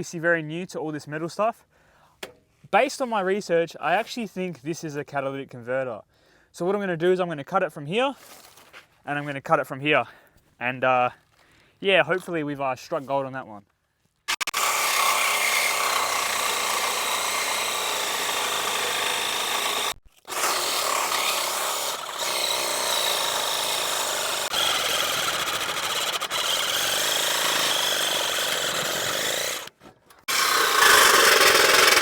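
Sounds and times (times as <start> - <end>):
power saw cutting metal pipe: 14.3 - 32.0.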